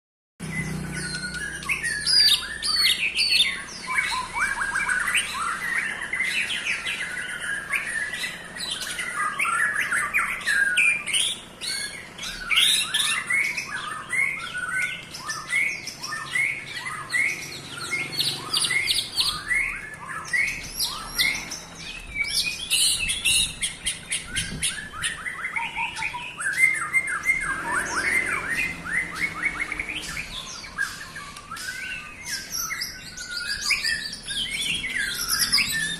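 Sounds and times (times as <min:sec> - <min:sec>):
songbird whistling and trilling: 0:00.4 - 0:35.9.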